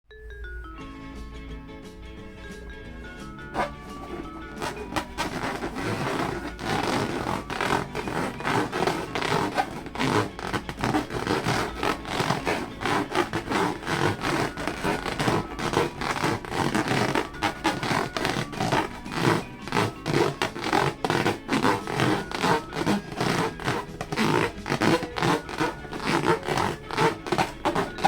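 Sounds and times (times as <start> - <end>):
hands rubbing balloons: 3.5 - 28.0.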